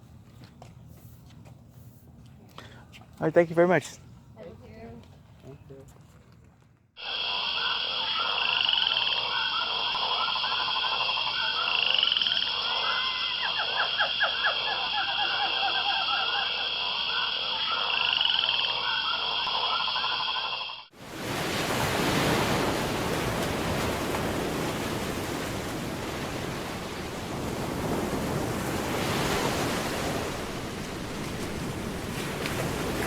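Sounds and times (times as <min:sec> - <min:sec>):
frogs croaking and trilling: 0:07.0 - 0:20.9.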